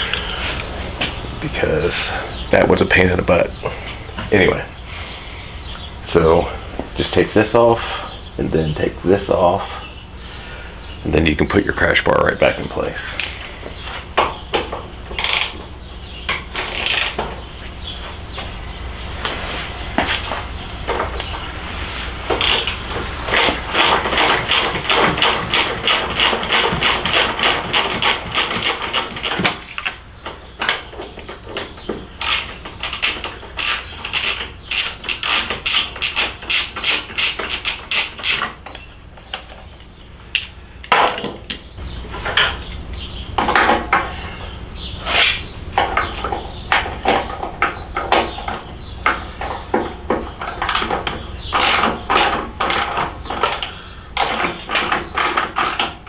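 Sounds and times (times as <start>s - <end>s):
socket ratchet clicking: 32.2s - 38.5s.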